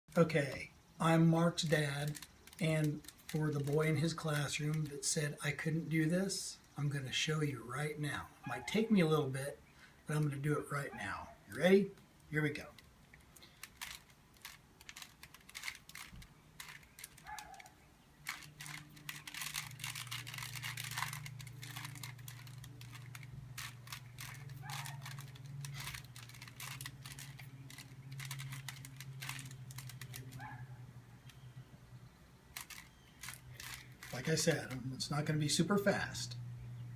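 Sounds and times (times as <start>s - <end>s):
low steady hum: 0.1s - 36.9s
puzzle cube layers clicking: 18.3s - 30.4s.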